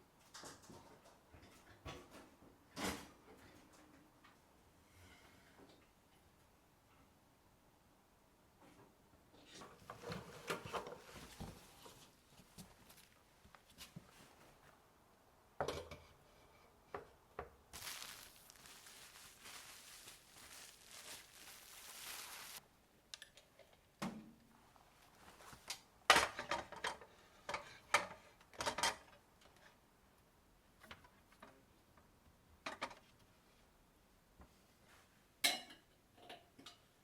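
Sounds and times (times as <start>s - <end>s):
steady hiss: 17.8s - 22.6s.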